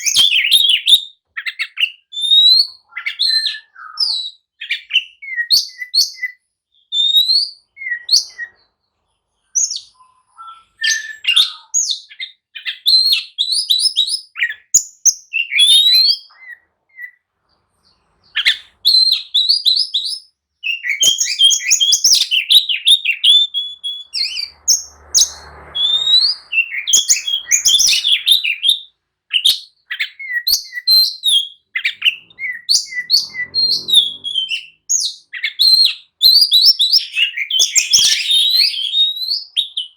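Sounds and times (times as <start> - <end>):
bird singing whistles and chirps: 0.0 - 8.7, 9.4 - 17.2, 17.8 - 39.9.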